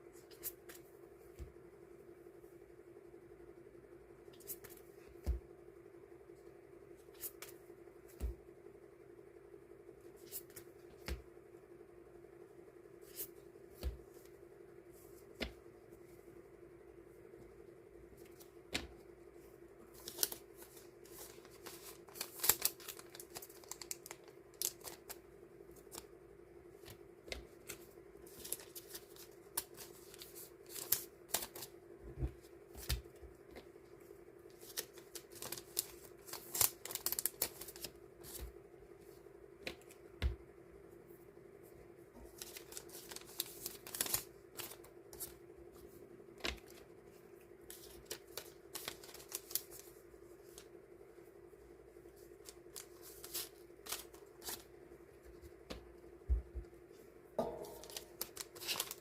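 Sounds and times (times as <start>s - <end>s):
steady low hum: 0.0s - 59.0s
paper rustling: 19.9s - 25.2s, 26.8s - 31.7s, 34.5s - 38.5s, 42.3s - 45.3s, 47.7s - 50.7s, 52.4s - 54.7s, 57.7s - 59.0s
sticker sheets rustling and tapping: 57.4s - 59.0s.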